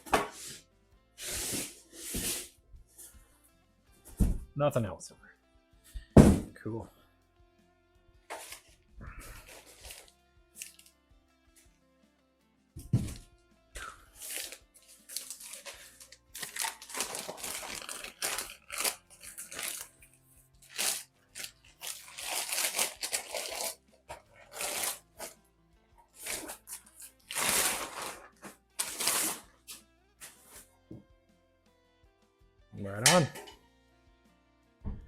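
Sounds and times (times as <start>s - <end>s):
quiet background music: 0.0s - 35.0s
packing material rustling and tearing: 8.3s - 10.9s, 14.1s - 25.4s, 26.1s - 30.7s.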